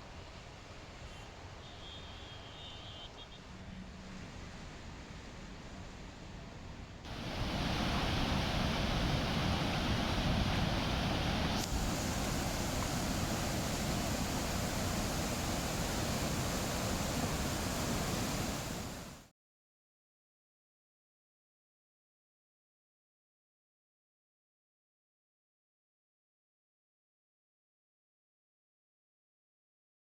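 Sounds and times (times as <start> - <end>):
heavy rain hissing: 7.1 - 19.3.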